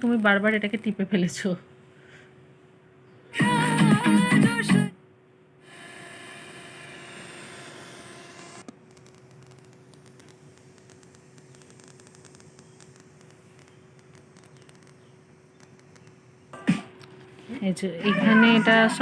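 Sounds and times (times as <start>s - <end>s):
faint steady hum: 0.0s - 19.0s
song on radio: 3.4s - 5.0s
radio static hiss: 8.5s - 17.6s.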